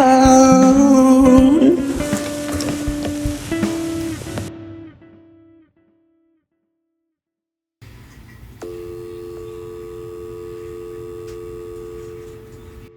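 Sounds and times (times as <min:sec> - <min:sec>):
line hiss and hum: 0:00.0 - 0:04.6
guitar notes ringing: 0:00.0 - 0:05.6
telephone dial tone: 0:08.6 - 0:12.9
click: 0:11.2 - 0:11.4.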